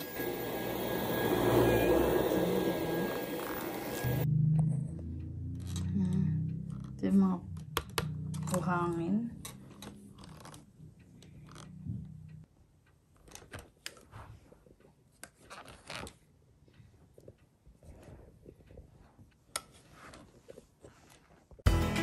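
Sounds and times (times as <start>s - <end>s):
rustling and scraping: 17.0s - 21.6s.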